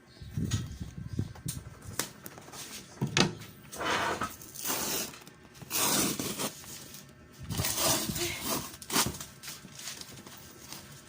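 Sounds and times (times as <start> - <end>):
packaging wrap tearing: 4.4 - 10.9.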